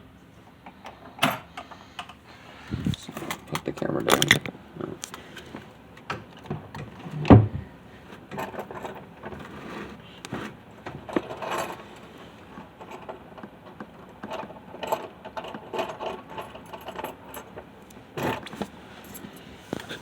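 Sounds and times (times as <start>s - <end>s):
keys jangling: 18.2s - 20.0s.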